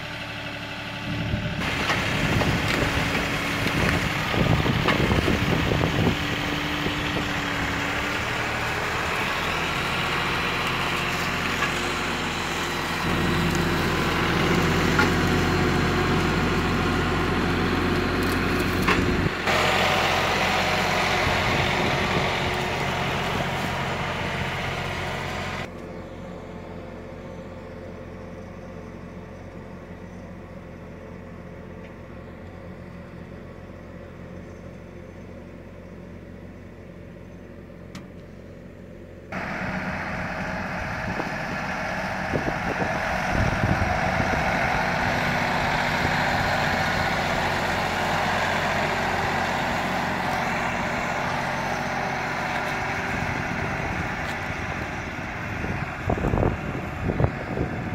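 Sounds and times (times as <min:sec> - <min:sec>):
tractor diesel engine running: 0:00.0 - 0:57.9.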